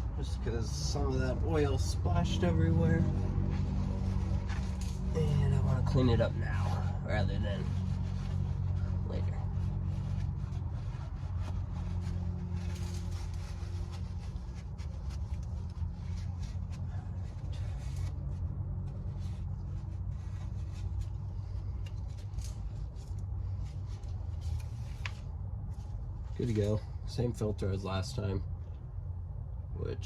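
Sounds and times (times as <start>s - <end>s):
steady low hum: 0.0s - 30.0s
rag wiping and scrubbing: 1.5s - 22.8s.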